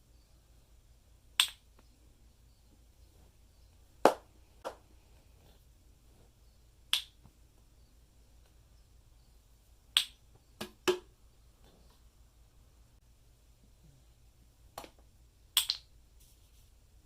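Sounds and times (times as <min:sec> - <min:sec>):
ball clacking on wooden toy: 0:09.9 - 0:11.1, 0:15.6 - 0:15.9.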